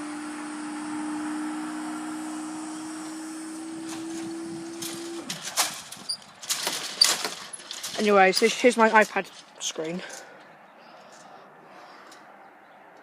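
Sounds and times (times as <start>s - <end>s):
barrier mechanism humming: 0.0s - 9.4s.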